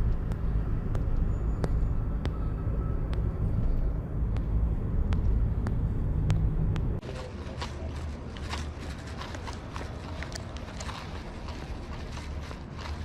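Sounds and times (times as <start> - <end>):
light sharp ticks: 0.0 - 2.4, 3.0 - 7.0
car driving rumble: 0.0 - 13.0.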